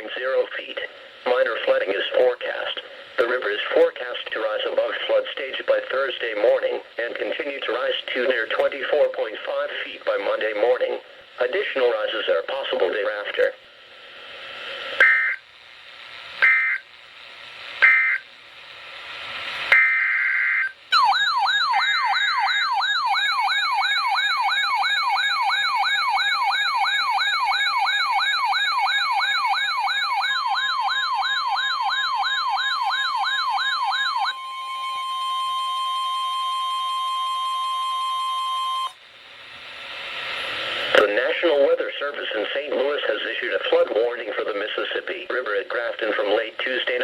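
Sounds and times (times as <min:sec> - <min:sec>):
high electronic data bursts: 0:16.3 - 0:16.9, 0:17.6 - 0:36.0
electronic siren sweeping upward: 0:19.7 - 0:39.0.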